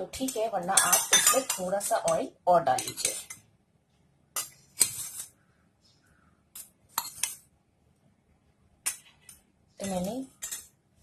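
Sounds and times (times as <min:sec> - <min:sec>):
spoon clinking against bowl: 0:00.2 - 0:02.2.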